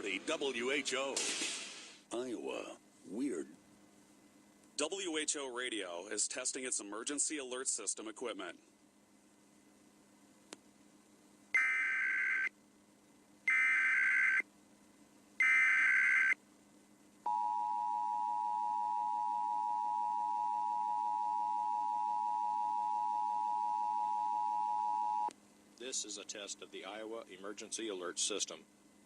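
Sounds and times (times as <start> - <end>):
shrill buzzing data bursts: 11.6 - 12.5, 13.5 - 14.4, 15.4 - 16.4.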